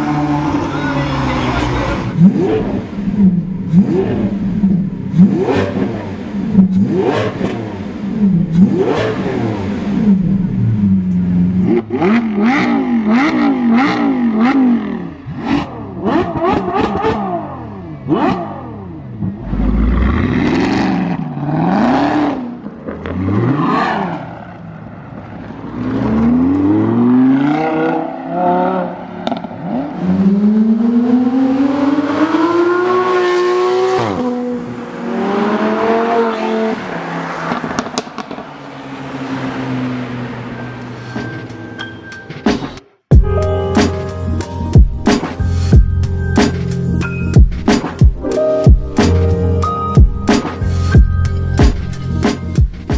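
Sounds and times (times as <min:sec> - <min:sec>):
car engines revving: 0:00.0 - 0:41.7.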